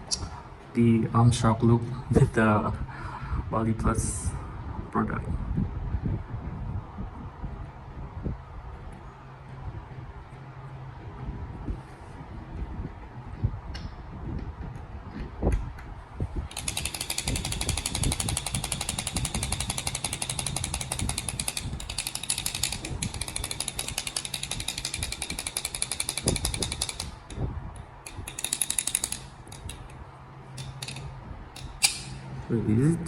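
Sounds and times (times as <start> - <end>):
butterfly knife clicking rattle: 16.5 - 32.2.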